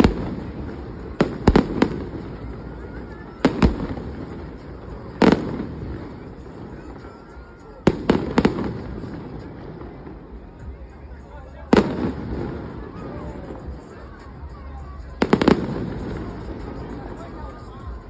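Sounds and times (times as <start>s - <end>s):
fireworks bursting bangs: 0.0s - 10.9s, 11.7s - 18.0s
background murmur: 0.0s - 18.0s.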